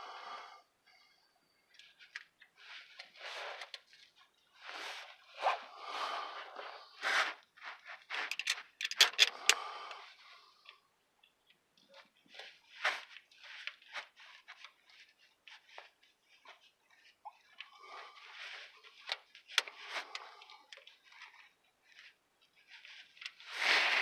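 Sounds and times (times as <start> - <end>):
scraping and rustling of tape: 1.7 - 24.0
sharp clicks of a clamp: 8.3 - 9.6.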